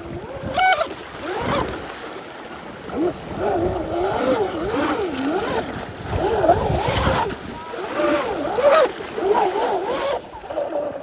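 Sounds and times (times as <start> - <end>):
sea wash: 0.0 - 11.0
electric motor whining: 2.9 - 10.9.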